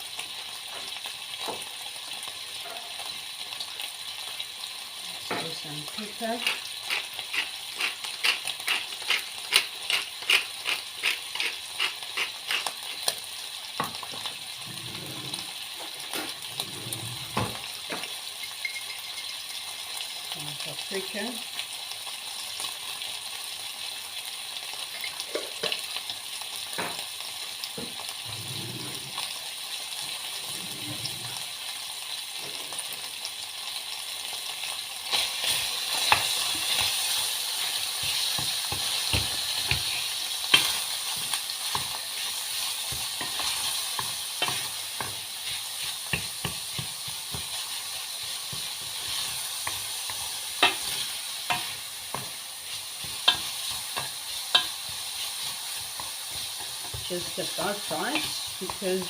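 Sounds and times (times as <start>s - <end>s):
food sizzling in a pan: 0.0s - 59.0s
utensil scraping a pan: 6.4s - 13.1s, 14.6s - 17.7s, 35.4s - 59.0s.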